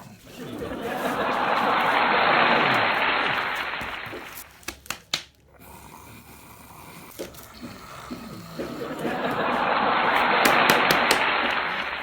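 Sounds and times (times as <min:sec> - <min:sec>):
applause: 0:00.6 - 0:05.3, 0:09.0 - 0:12.0
scattered single claps: 0:02.9 - 0:05.4, 0:09.1 - 0:12.0.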